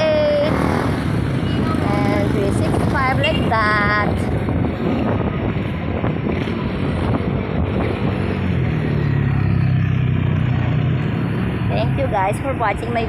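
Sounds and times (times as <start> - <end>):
road traffic noise: 0.0 - 13.0
vehicle engine hum passing: 0.0 - 13.0
wind buffeting microphone: 1.8 - 8.7.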